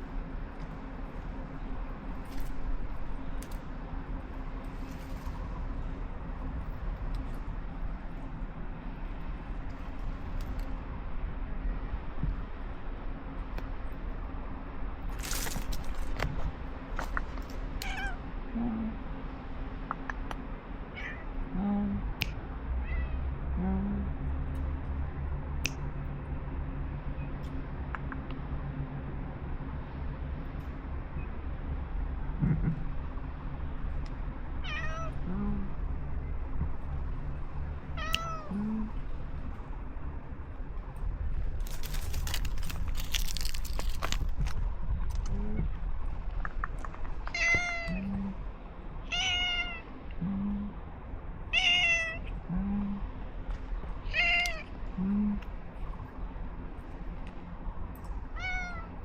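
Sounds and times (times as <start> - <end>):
low rumble: 0.0 - 59.0
cat meowing: 17.8 - 18.2, 20.9 - 21.3, 34.6 - 35.2, 38.0 - 38.6, 47.3 - 48.3, 49.1 - 49.8, 51.6 - 52.2, 54.1 - 54.6, 58.4 - 58.9.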